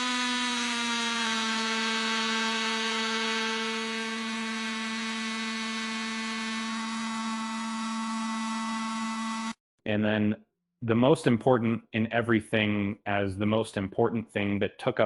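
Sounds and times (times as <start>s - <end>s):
low buzzing drone: 0.0s - 9.6s.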